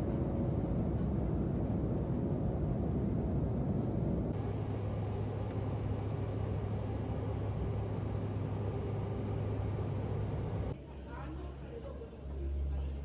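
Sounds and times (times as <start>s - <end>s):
even hiss: 4.4s - 10.7s
vehicle rumble: 4.4s - 10.8s.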